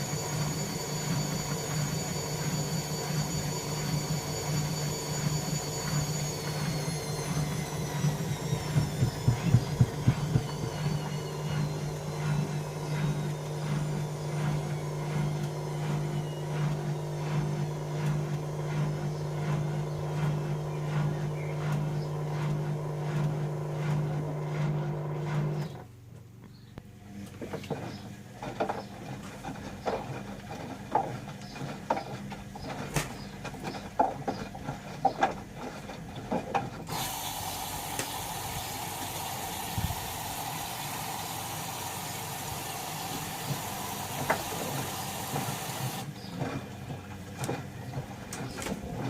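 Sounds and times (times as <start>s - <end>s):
high motor whine: 0.0s - 25.9s
washing machine humming: 0.0s - 49.0s.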